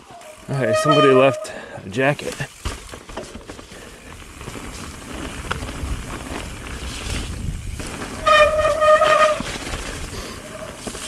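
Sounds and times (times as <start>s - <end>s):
bike tyres on snowy trail: 0.0s - 11.0s
disc brake squeal: 0.5s - 1.4s.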